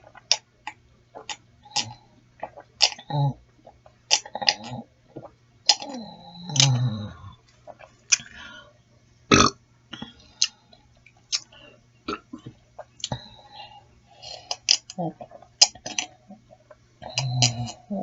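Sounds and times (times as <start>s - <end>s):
person eating soup: 0.0s - 8.6s, 9.3s - 18.0s
low falling burp: 9.3s - 9.6s, 17.0s - 18.0s.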